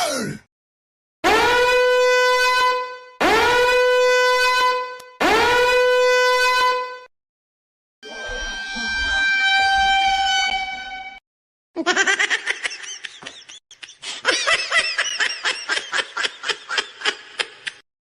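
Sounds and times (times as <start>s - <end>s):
held horn-like tone: 1.2s - 7.1s, 8.0s - 11.2s.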